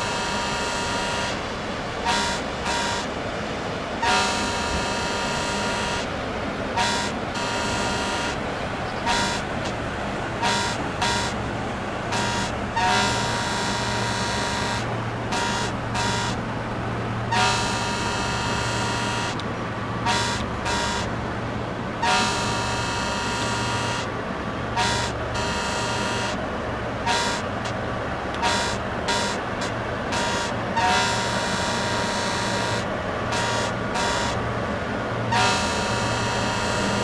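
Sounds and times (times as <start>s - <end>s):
ship's horn blasts: 0.0s - 37.0s
steady low hum: 0.0s - 37.0s.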